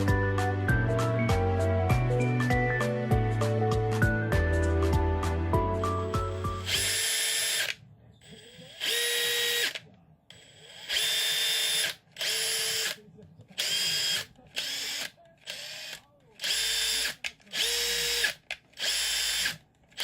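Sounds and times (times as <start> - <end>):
background music: 0.0 - 6.8
impact driver motor whine: 6.5 - 13.0, 13.6 - 20.0.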